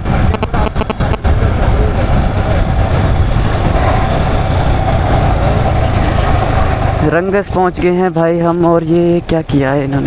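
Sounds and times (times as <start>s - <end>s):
motorcycle engine running: 0.0s - 10.0s
wind noise on microphone: 0.0s - 10.0s.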